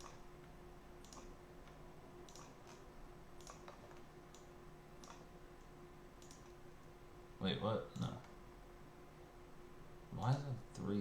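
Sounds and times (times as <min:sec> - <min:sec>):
faint computer mouse clicks: 0:01.0 - 0:02.8, 0:03.4 - 0:06.6.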